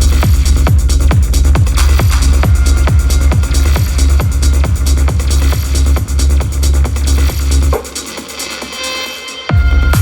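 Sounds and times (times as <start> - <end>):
pounding kick drum and bass: 0.0 - 10.0.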